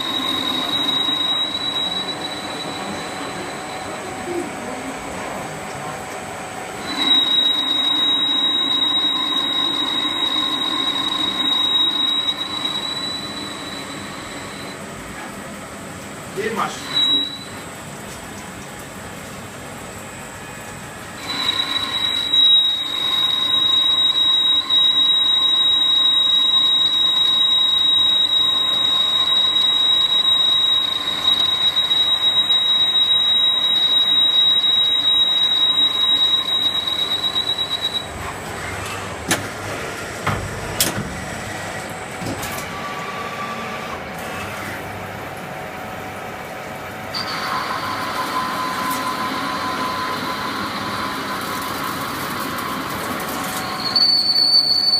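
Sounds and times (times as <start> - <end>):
lathe high-pitched cutting whistle: 0.0 - 4.3, 6.8 - 14.8, 16.5 - 17.6, 21.2 - 38.2, 47.1 - 54.9
low steady machine whine: 0.0 - 54.2.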